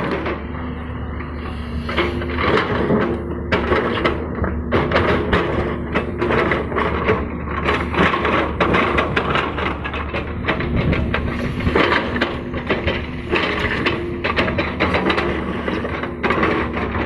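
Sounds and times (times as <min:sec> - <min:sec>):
excavator diesel engine running: 0:00.0 - 0:17.0
bucket scraping through soil: 0:01.3 - 0:03.2, 0:10.8 - 0:16.7.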